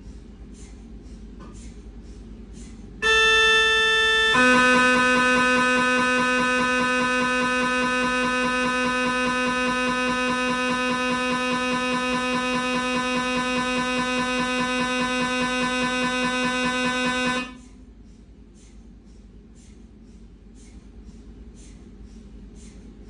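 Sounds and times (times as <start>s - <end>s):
mri scanner buzzing drone: 3.0s - 17.7s.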